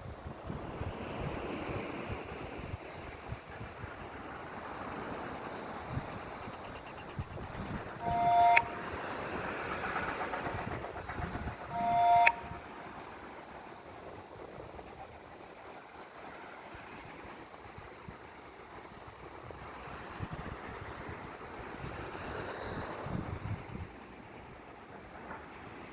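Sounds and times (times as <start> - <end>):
wind noise: 7.0 - 8.1
two-tone horn blasts: 7.4 - 13.1.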